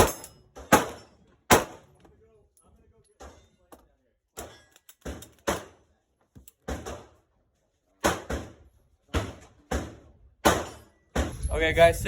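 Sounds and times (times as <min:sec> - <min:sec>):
gunshots: 0:00.0 - 0:01.9, 0:09.2 - 0:11.4.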